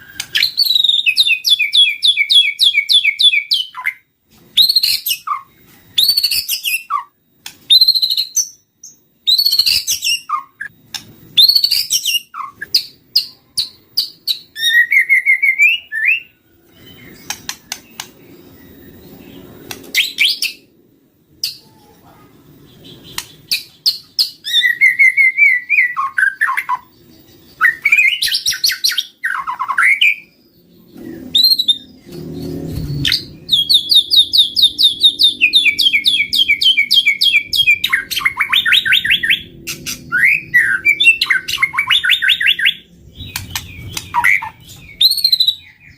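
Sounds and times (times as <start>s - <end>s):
bird singing whistled phrases: 0.0s - 4.0s, 4.6s - 8.6s, 9.2s - 10.7s, 11.3s - 17.4s, 22.8s - 26.9s, 27.6s - 30.4s, 31.2s - 32.0s, 32.8s - 45.9s.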